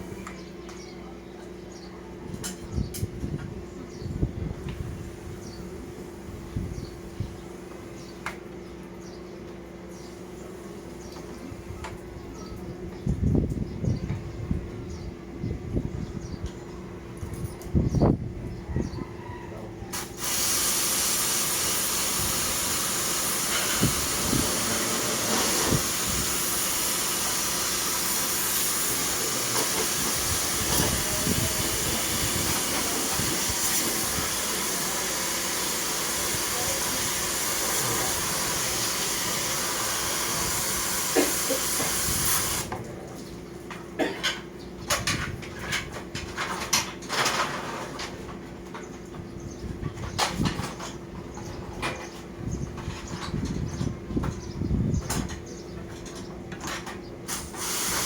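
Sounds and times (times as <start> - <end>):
high-pressure water spray hissing: 19.9 - 42.7, 57.3 - 58.0.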